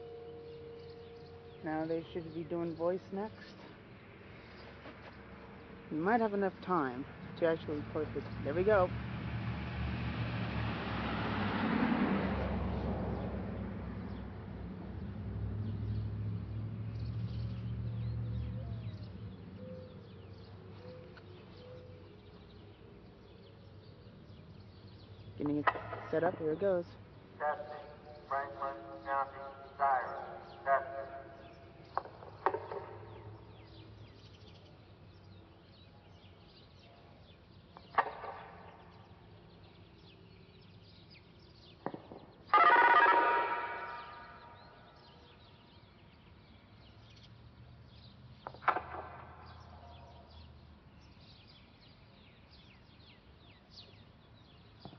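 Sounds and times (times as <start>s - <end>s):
small birds chirping: 15.0s - 42.5s, 43.8s - 54.9s.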